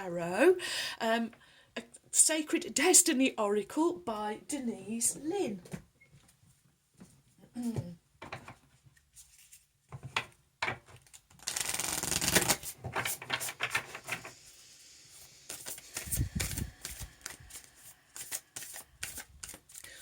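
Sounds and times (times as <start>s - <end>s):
cards being shuffled by hand: 11.0s - 14.4s, 15.4s - 20.0s.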